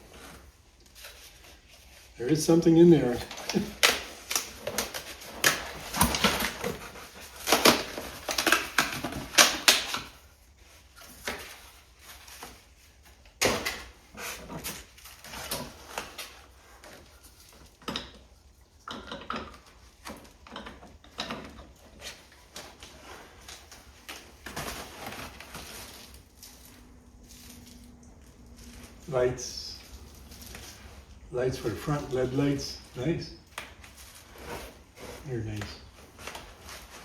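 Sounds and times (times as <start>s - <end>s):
packaging rustling and crinkling: 0.0s - 17.8s, 21.3s - 37.0s
clicks and knocks of parts handled: 13.4s - 26.6s.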